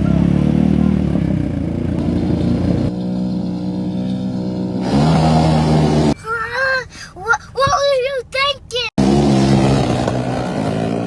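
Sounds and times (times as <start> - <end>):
quad bike engines revving: 0.0 - 6.2, 9.0 - 11.0.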